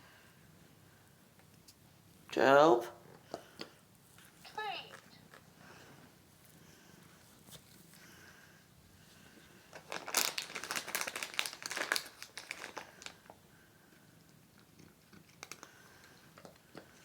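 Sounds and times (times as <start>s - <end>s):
plastic packet rustling: 9.7s - 13.4s.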